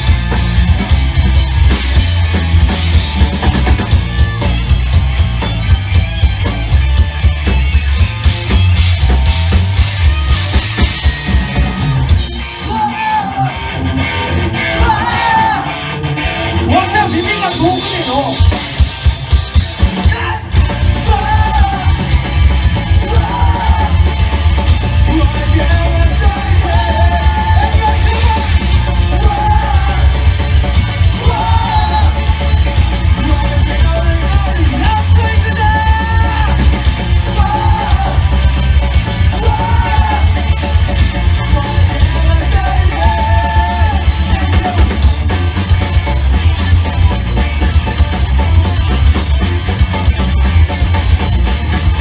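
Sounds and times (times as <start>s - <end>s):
bass pounding: 0.0s - 12.9s, 13.6s - 52.0s
drums pounding: 0.0s - 13.6s, 14.6s - 52.0s
live rock band playing: 0.0s - 52.0s
shouted sung lead vocal: 10.0s - 16.0s, 20.0s - 45.1s.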